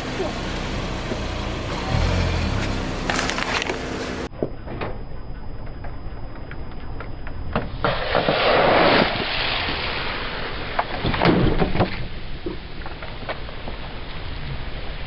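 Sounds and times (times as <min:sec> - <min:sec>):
low car rumble: 0:00.0 - 0:07.8
objects crunching under car tyre: 0:01.0 - 0:04.3.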